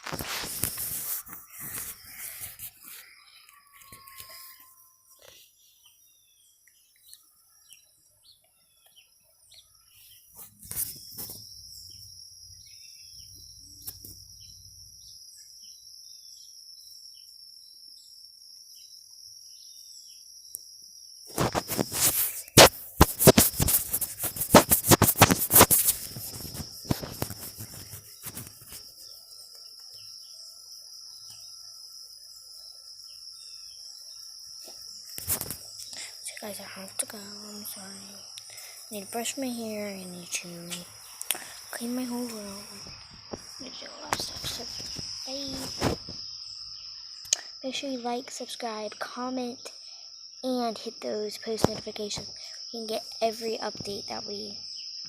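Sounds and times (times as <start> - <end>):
loud crackling rustle: 0.0 - 3.0, 21.3 - 28.9
insects trilling: 0.0 - 55.0.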